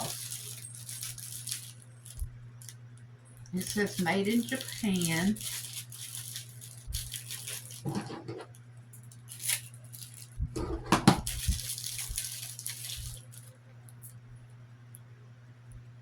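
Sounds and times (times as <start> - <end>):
packaging rustling and crinkling: 0.0 - 2.8, 3.6 - 13.5
steady low hum: 0.0 - 16.0.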